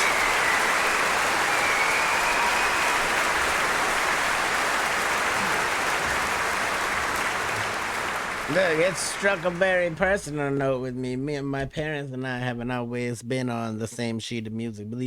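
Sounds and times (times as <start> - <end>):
audience applauding: 0.0 - 10.6.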